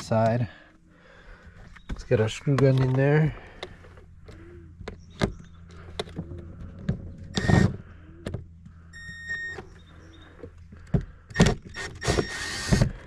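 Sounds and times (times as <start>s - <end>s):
handling clicks and knocks: 1.6s - 7.3s
screw gun motor whining: 7.3s - 7.9s, 8.9s - 9.8s, 11.3s - 13.0s.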